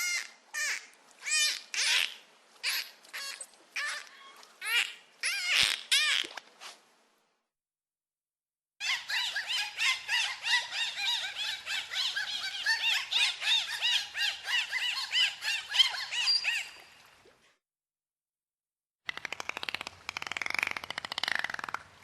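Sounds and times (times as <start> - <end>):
dolphins whistling: 8.9 - 16.9.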